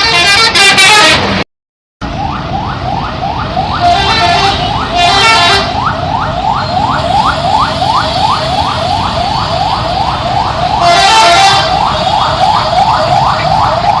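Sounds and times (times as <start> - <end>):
brassy horn blast: 0.0 - 1.4
musical multi-tone bus horn whooping: 0.0 - 1.4, 3.8 - 5.8, 10.8 - 12.1.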